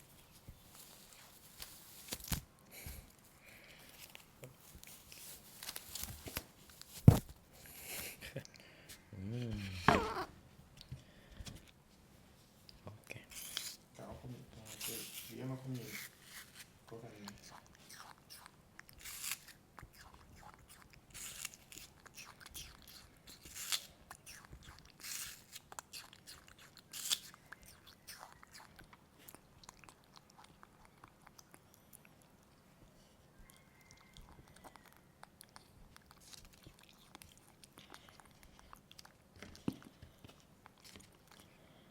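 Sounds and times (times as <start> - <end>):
monkey chewing with crunching bites: 16.9 - 41.6.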